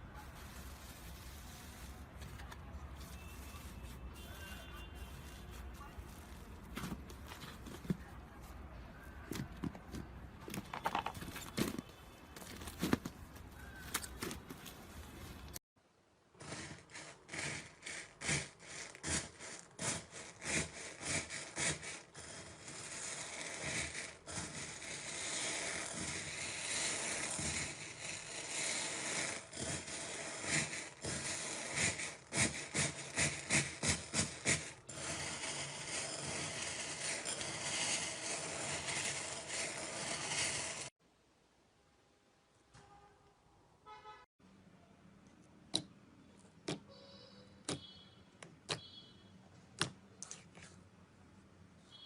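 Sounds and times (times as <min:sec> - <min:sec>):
knife scraping soap: 0:16.4 - 0:40.9.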